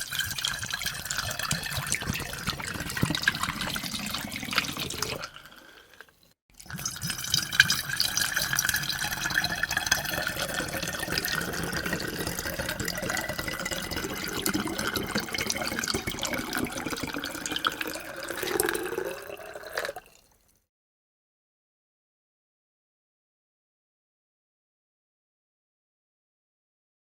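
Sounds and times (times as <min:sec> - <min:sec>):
water pouring into a glass: 0:00.0 - 0:20.6.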